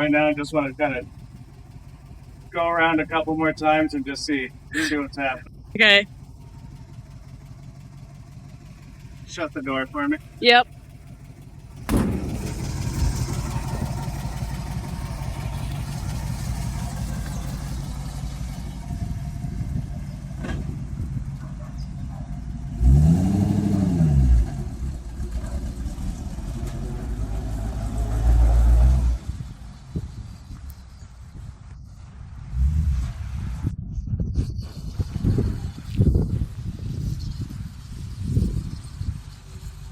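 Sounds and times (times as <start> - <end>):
truck engine running: 0.0 - 33.7, 34.7 - 39.9.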